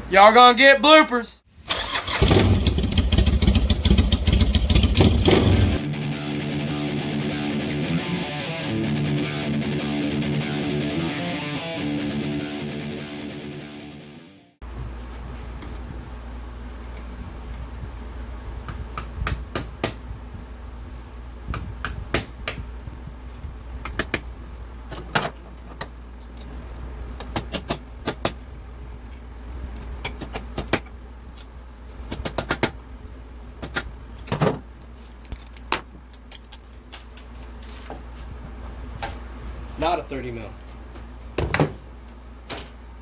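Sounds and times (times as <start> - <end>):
steady low hum: 14.6 - 43.0
metal tools clinking: 42.5 - 43.0.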